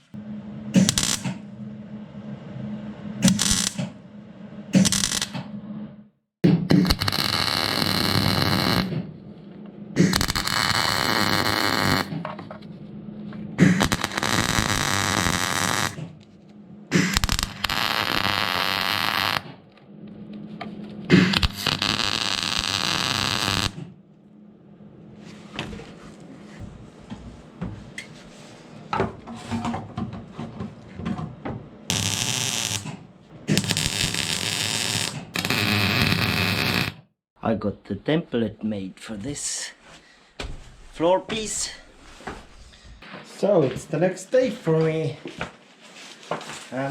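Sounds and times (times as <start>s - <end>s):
welding arc bursts: 0.8s - 1.4s, 3.2s - 3.9s, 4.8s - 5.4s, 6.7s - 8.9s, 10.0s - 12.1s, 13.6s - 16.2s, 16.9s - 19.6s, 21.1s - 23.8s, 31.9s - 37.0s.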